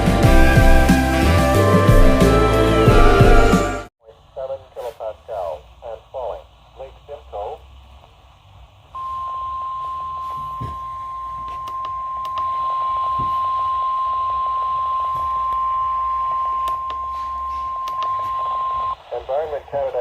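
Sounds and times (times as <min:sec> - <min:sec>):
faint radio hum: 0:04.0 - 0:08.2, 0:16.8 - 0:20.0.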